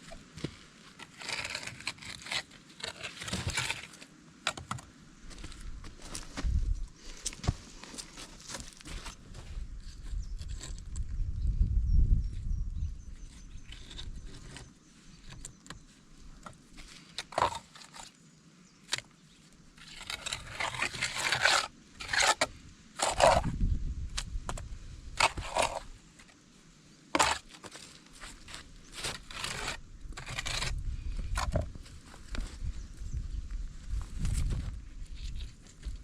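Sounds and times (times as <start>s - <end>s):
trowel scraping mortar: 0.9s - 4.7s, 16.9s - 18.1s, 19.8s - 23.6s, 25.2s - 26.4s, 27.2s - 31.7s.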